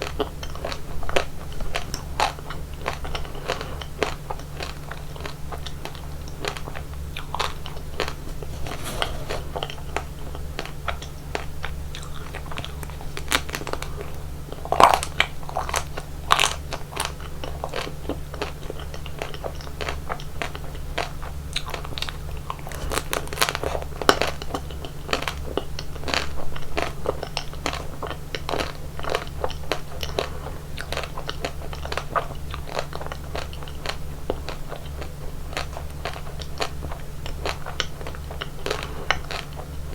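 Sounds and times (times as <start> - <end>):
steady low hum: 7.6 - 10.4.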